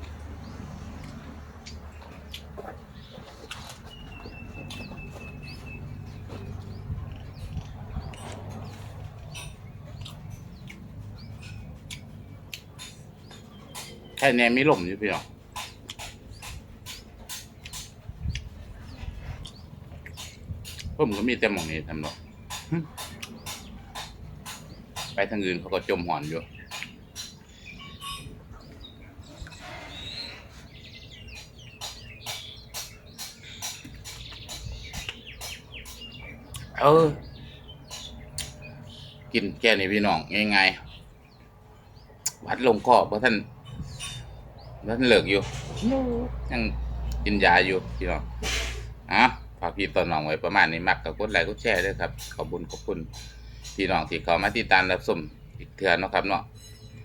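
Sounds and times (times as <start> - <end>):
bird chirps: 0.4 - 57.0
chewing and lip-smacking: 0.9 - 5.3, 6.3 - 14.0, 15.6 - 17.0, 22.6 - 24.8.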